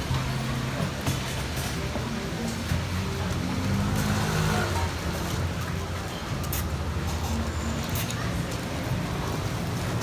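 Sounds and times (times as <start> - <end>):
faint background voices: 0.0 - 10.0.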